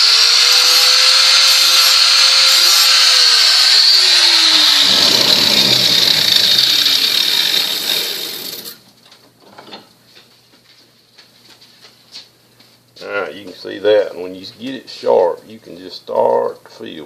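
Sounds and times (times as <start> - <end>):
angle grinder grinding steel: 0.0 - 8.8.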